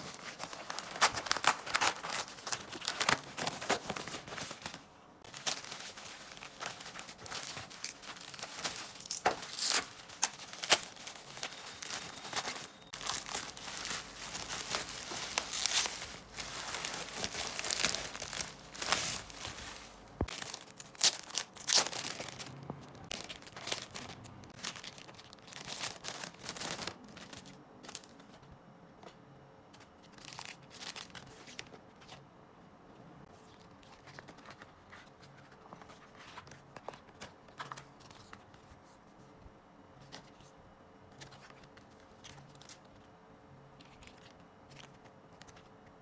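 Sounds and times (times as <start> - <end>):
plastic wrapping crinkling: 0.0 - 28.2.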